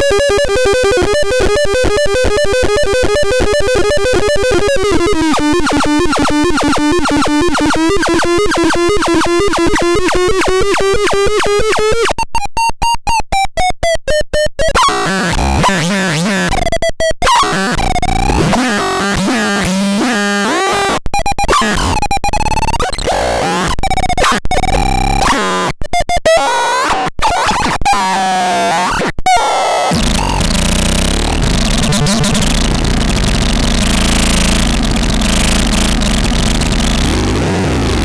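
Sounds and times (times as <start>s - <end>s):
synthesizer buzzing pulse: 0.0s - 12.1s, 29.8s - 38.0s.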